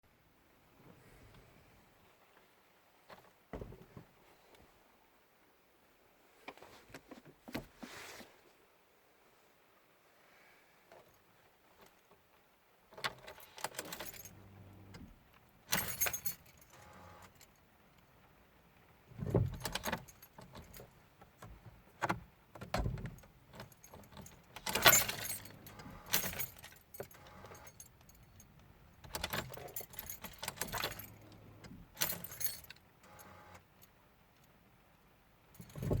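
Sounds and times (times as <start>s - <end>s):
keys jangling: 13.1s - 15.0s, 15.7s - 17.6s, 19.5s - 20.9s, 23.1s - 33.9s, 35.6s - 36.0s.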